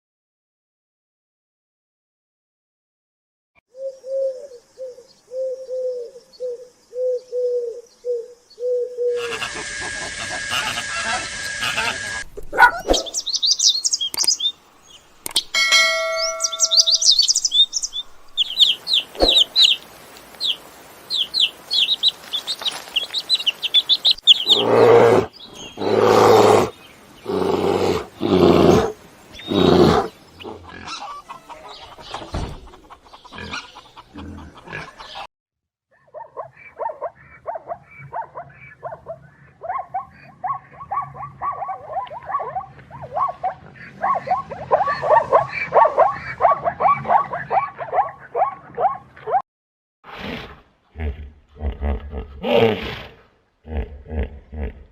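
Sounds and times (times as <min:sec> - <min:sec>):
loud drawn-out low animal calls: 0:08.7 - 0:13.2, 0:24.3 - 0:31.8
rapid high animal chirping: 0:09.2 - 0:14.5, 0:15.2 - 0:35.3.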